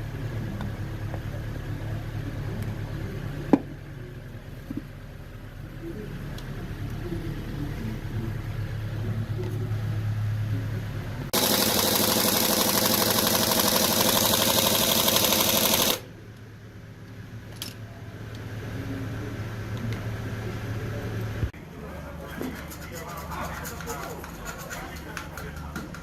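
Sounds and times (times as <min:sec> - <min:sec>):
fast-pulsing engine clatter: 0:11.4 - 0:16.1.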